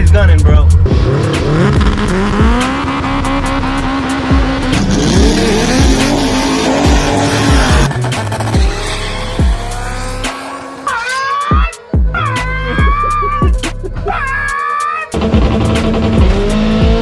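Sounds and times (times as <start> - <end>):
music with low bass line: 0.0 - 10.4, 11.5 - 14.6, 15.2 - 17.0
car engine revving: 0.0 - 11.1, 15.2 - 17.0.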